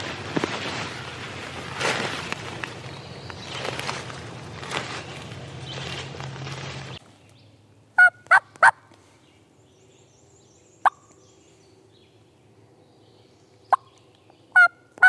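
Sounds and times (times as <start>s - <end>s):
leaves rustling underfoot: 0.0s - 7.6s
turkey clucking: 8.0s - 8.8s, 14.6s - 14.8s
turkey yelping: 8.0s - 8.8s, 14.6s - 15.0s.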